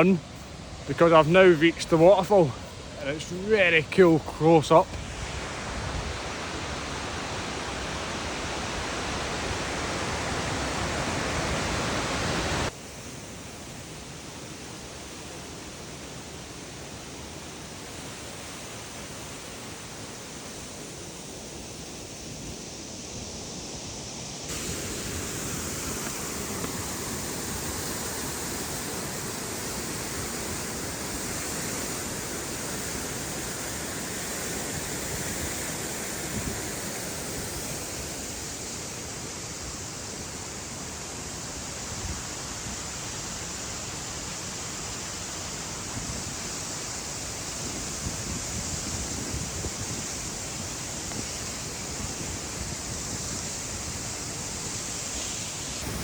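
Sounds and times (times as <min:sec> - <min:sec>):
waterfall rushing: 0:00.0 - 0:12.7, 0:24.5 - 0:56.0.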